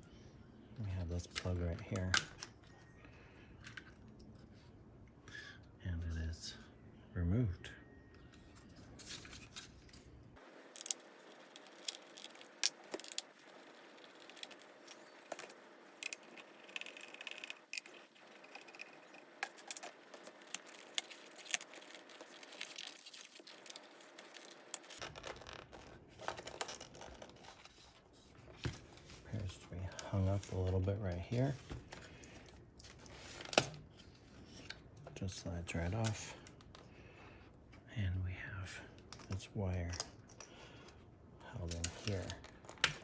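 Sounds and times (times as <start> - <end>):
plastic and metal parts clicking: 10.7 - 27.8.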